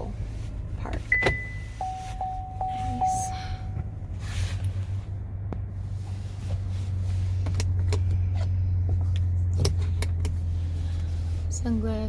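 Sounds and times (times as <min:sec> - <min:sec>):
idling car cabin hum: 0:00.0 - 0:12.0
sharp clicks of cabin controls: 0:00.9 - 0:04.0.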